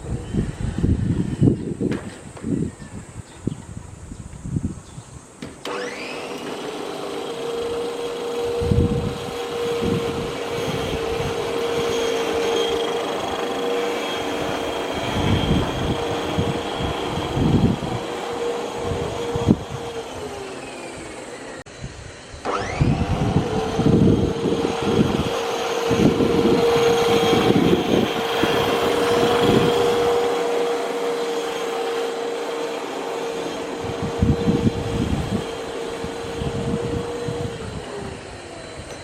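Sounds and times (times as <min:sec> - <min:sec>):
electric mower whining: 0:00.0 - 0:39.0.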